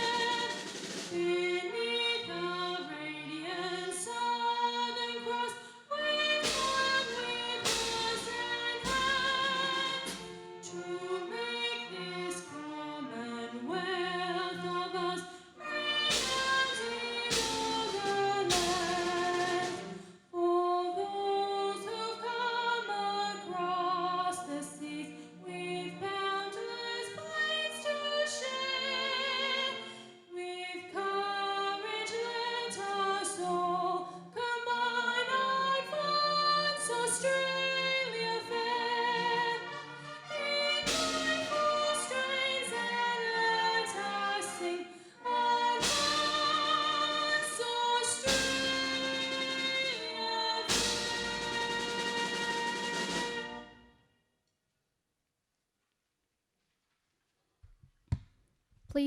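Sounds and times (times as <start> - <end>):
drum or cymbal strokes: 0.0 - 1.4, 6.4 - 10.6, 15.7 - 20.1, 39.5 - 42.8, 45.6 - 53.8
singing with vibrato: 0.0 - 53.7.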